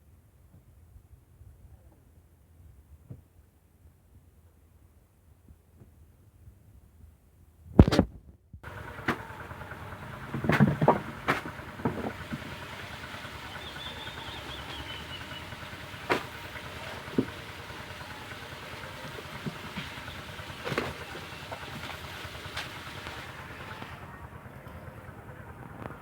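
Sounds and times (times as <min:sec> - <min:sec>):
machine motor running: 0:08.6 - 0:26.0
knocks and clatters: 0:08.7 - 0:12.8.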